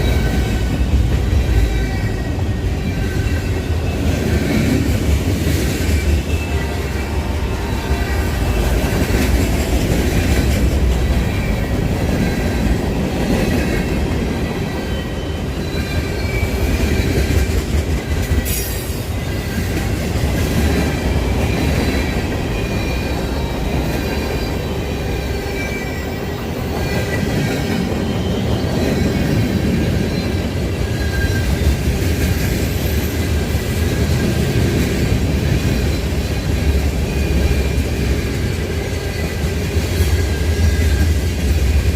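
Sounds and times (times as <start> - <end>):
wheels squealing: 0.0 - 17.6
train wheels rumbling on rails: 0.0 - 41.9.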